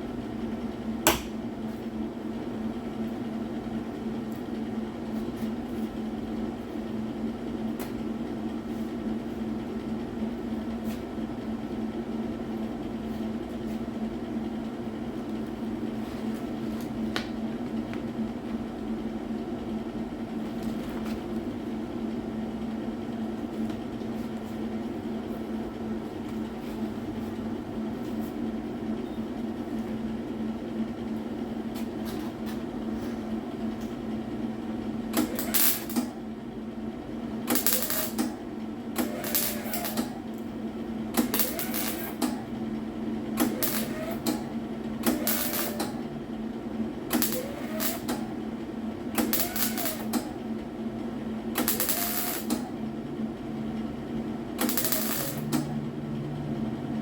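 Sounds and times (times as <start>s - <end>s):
steady hum: 0.0s - 57.0s
crackly welding bursts: 35.1s - 36.1s, 37.4s - 38.4s, 39.0s - 40.2s, 41.1s - 42.4s, 43.4s - 44.4s, 45.0s - 46.0s, 47.1s - 48.2s, 49.1s - 50.3s, 51.5s - 52.7s, 54.6s - 55.7s.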